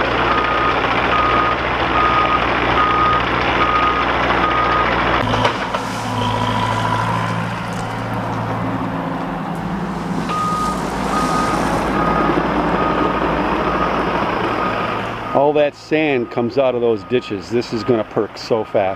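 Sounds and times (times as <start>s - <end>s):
diesel construction machine running: 0.0s - 18.9s
backup alarm beeping: 0.3s - 7.2s, 9.9s - 13.9s.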